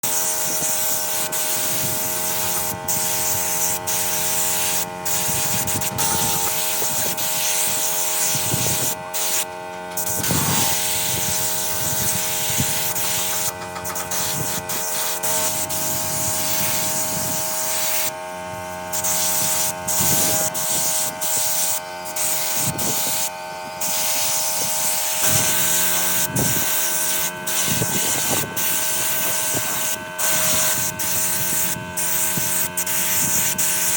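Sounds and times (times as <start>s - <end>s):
machine hum: 1.0s - 32.7s.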